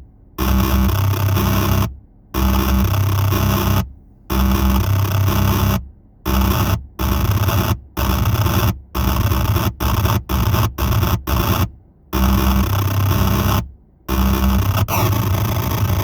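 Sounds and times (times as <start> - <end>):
low synth hum: 0.3 - 11.6, 12.2 - 16.0
synth static noise bursts: 12.2 - 16.0.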